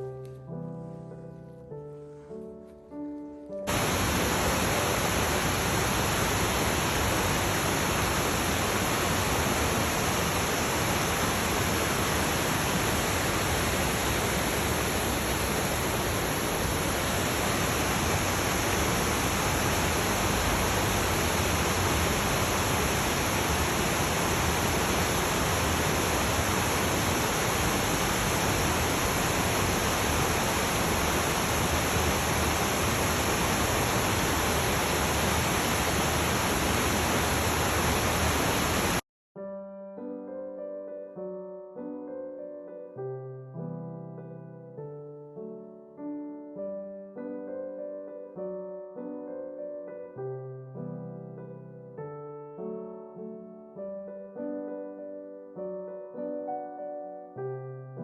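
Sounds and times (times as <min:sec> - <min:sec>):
rushing water: 0:03.7 - 0:39.0.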